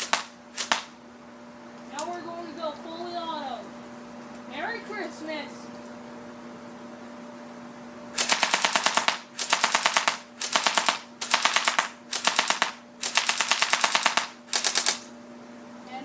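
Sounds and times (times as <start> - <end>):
airsoft rifle firing bursts: 0.0 - 0.9, 8.2 - 15.0.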